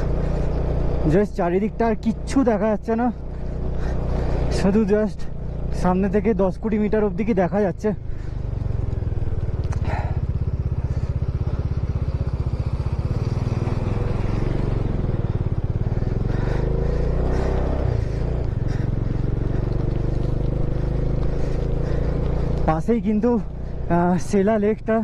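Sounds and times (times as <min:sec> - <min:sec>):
motorcycle engine running: 0:00.0 - 0:25.0.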